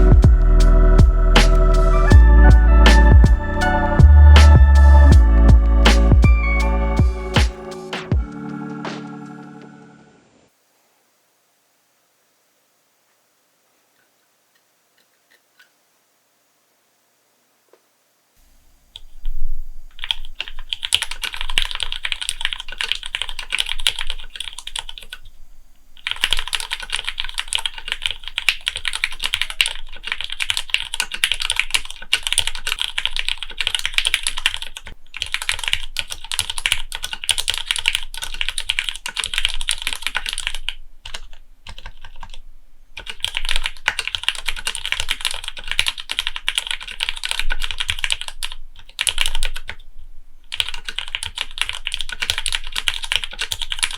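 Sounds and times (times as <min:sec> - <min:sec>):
mechanical keyboard typing: 0:20.0 - 0:25.2, 0:26.0 - 0:42.4, 0:43.0 - 0:49.8, 0:50.5 - 0:53.9.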